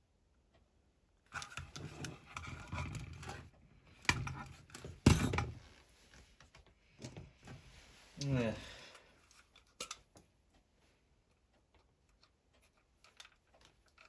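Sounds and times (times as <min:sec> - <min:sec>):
plastic rustling and scraping: 0:01.4 - 0:03.6.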